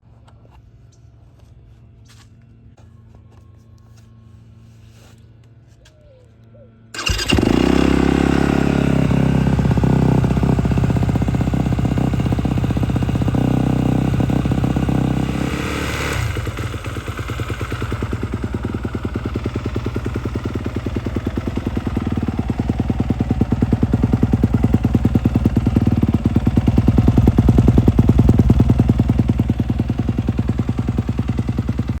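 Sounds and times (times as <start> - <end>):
dirt bike engine running: 7.0 - 32.0.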